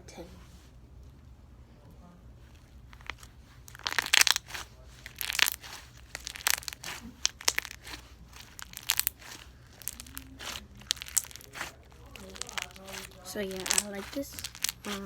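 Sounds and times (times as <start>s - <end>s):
slime crackling and popping: 2.9s - 15.0s.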